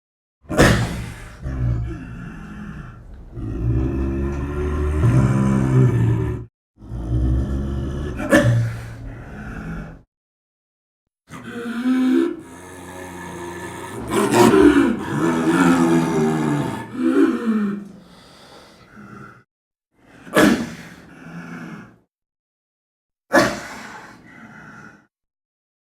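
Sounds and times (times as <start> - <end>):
snow leopard growling call: 0.5 - 10.0, 11.6 - 17.9.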